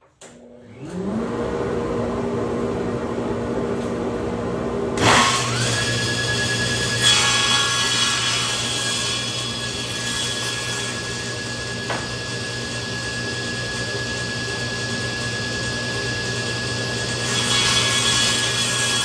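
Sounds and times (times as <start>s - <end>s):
table saw running: 4.4s - 19.0s.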